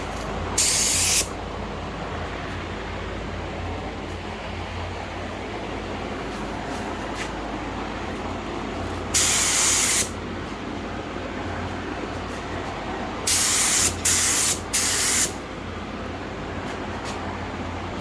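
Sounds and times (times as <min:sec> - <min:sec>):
steady low hum: 0:00.0 - 0:18.0
spray gun hissing: 0:00.6 - 0:01.3, 0:09.2 - 0:10.1, 0:13.3 - 0:15.4.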